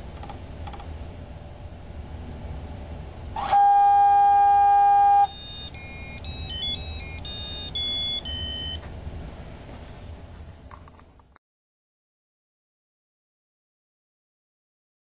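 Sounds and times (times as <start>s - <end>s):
long electronic beep: 3.4s - 8.8s
beeped tune: 3.6s - 8.8s.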